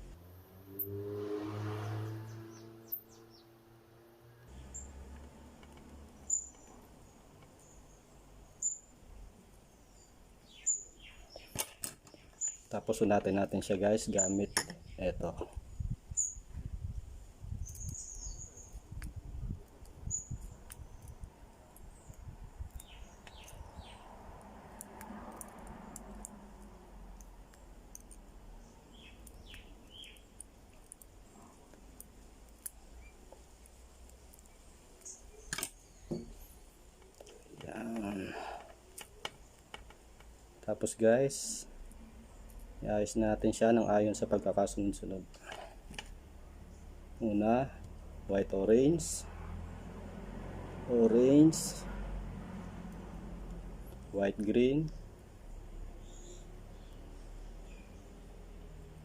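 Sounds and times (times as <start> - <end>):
faint background noise: 0.0 - 59.0
bird chirping: 2.1 - 3.8, 4.5 - 5.1, 6.0 - 17.0, 17.6 - 21.2, 21.8 - 24.2, 28.6 - 30.4, 34.4 - 39.5, 55.5 - 58.2
cable wires clicking and rustling: 18.6 - 28.3, 29.0 - 40.8.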